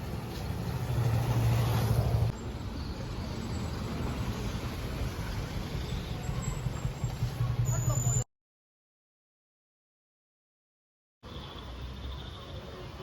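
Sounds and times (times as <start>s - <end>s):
traffic rumble: 0.0s - 8.2s.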